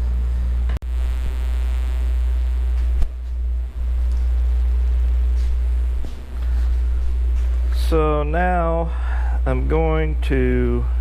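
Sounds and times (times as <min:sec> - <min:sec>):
low rumble: 0:00.0 - 0:08.0
faint high whine: 0:00.0 - 0:11.0.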